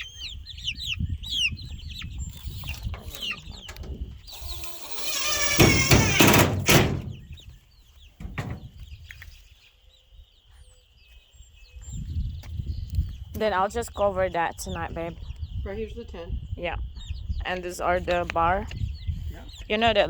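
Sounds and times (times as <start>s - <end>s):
baby chicks peeping: 0.0s - 20.0s
loud harsh noise: 4.3s - 7.1s.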